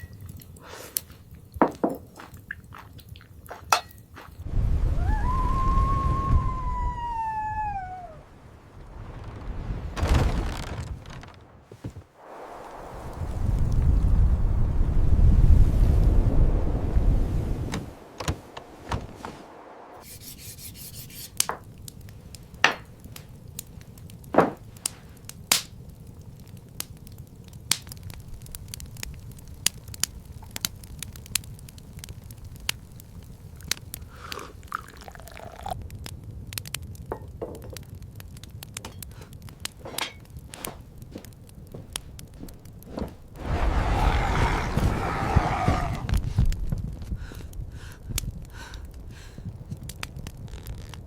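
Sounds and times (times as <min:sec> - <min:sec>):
sharp clicks and cracks: 0:24.8 - 0:34.0, 0:46.1 - 0:51.0.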